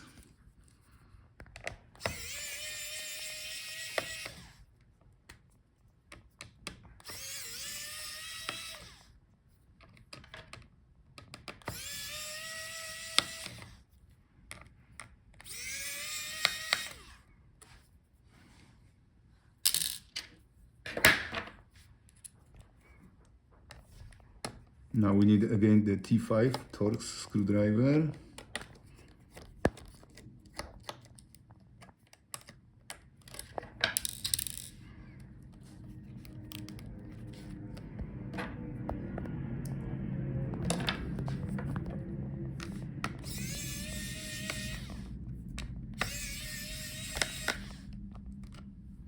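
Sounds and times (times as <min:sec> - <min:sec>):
electric screwdriver motor: 0:01.9 - 0:04.7, 0:07.0 - 0:09.1, 0:11.6 - 0:13.8, 0:15.4 - 0:17.2, 0:43.1 - 0:48.1.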